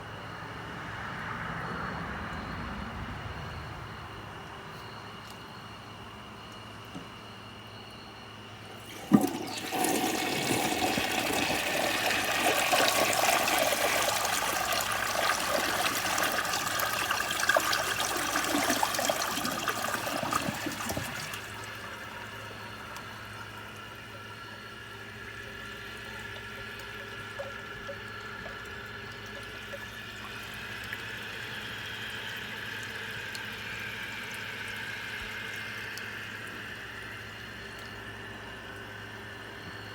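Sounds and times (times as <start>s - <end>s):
toilet flushing water rushing: 8.6s - 39.9s
tank refilling hiss: 8.7s - 38.7s
toilet flush lever clack: 8.9s - 11.7s.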